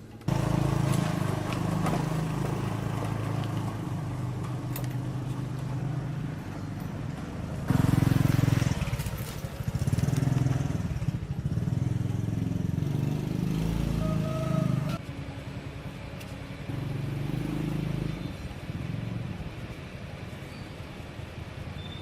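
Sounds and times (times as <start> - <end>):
small chainsaw engine running: 0.3 - 4.2.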